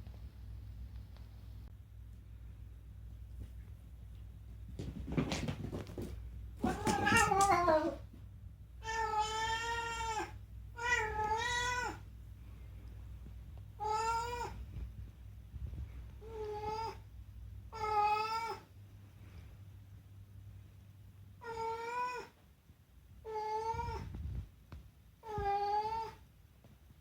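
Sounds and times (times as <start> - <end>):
cat meowing: 6.6 - 8.0, 8.8 - 12.0, 13.8 - 14.6, 21.4 - 22.3.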